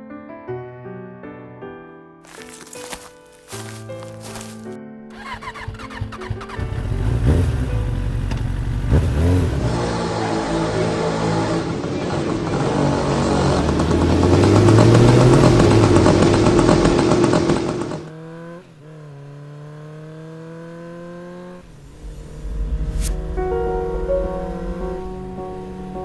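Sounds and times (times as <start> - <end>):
vehicle engine revving: 5.2 - 26.0
held tone rising in pitch: 21.6 - 26.0.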